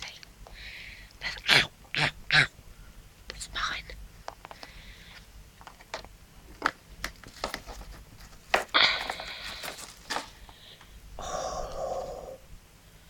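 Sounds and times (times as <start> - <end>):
close rustling and scraping: 4.2 - 10.9.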